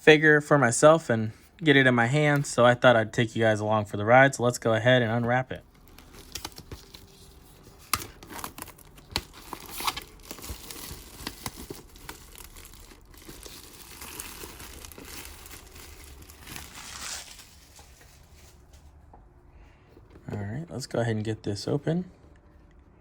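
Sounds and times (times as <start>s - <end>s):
plastic wrapping tearing and crinkling: 5.7s - 18.8s.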